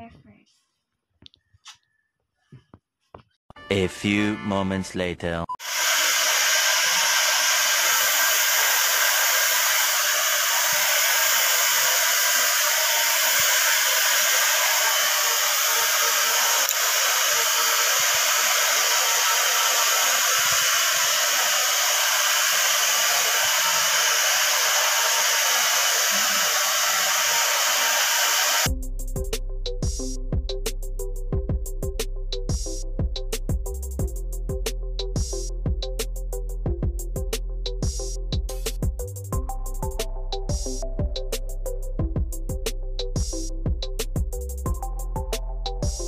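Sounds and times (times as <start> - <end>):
hair dryer blowing: 5.6 - 28.7.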